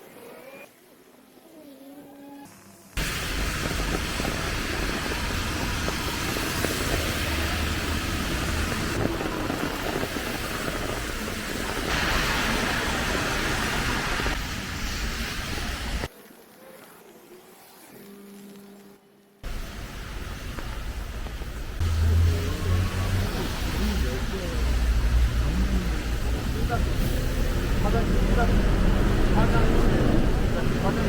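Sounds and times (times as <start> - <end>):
street traffic rumble: 3.0 - 16.1, 19.4 - 31.0.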